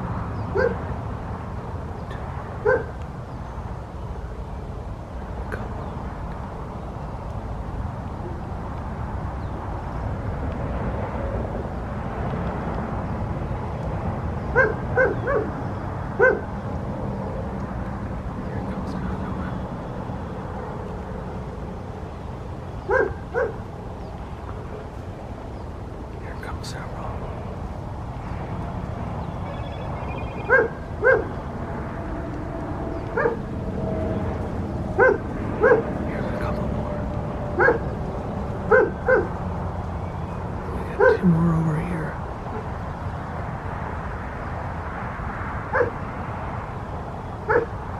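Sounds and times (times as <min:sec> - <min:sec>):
animal barking: 0:00.5 - 0:00.9, 0:02.6 - 0:03.0, 0:14.5 - 0:15.6, 0:16.2 - 0:16.5, 0:22.8 - 0:23.7, 0:29.4 - 0:31.4, 0:33.1 - 0:33.4, 0:35.0 - 0:38.0, 0:38.6 - 0:39.4, 0:40.6 - 0:41.2, 0:45.7 - 0:46.0, 0:47.5 - 0:47.8
low rumble: 0:23.6 - 0:44.8.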